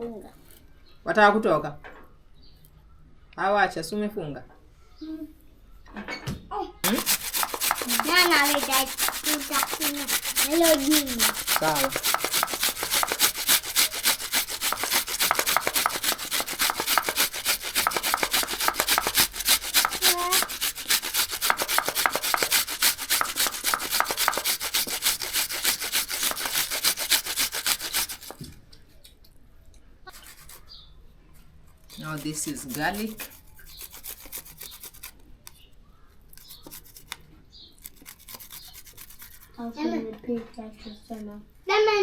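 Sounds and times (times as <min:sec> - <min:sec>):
vegetables being cut with scraping strokes: 0:06.8 - 0:28.6, 0:30.1 - 0:30.7, 0:31.8 - 0:35.2, 0:36.3 - 0:37.2, 0:37.8 - 0:39.6.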